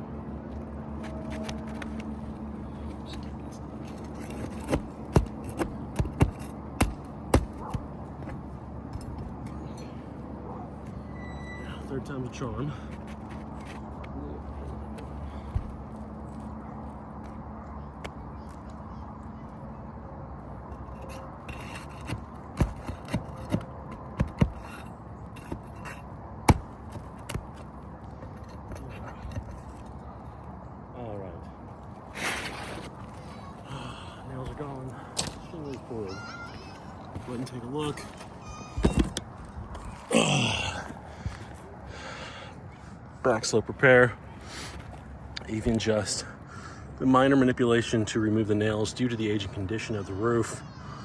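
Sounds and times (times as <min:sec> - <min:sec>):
low background hum: 0:00.0 - 0:51.0
sharp knocks and scrapes: 0:02.8 - 0:09.6, 0:12.8 - 0:16.4, 0:20.6 - 0:30.1, 0:32.0 - 0:33.6
tool prying out nails: 0:04.2 - 0:07.9, 0:20.9 - 0:27.6.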